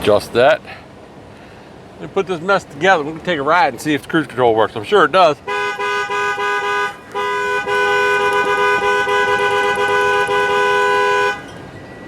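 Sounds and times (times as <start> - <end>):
two-note car horn honking: 5.4 - 11.7.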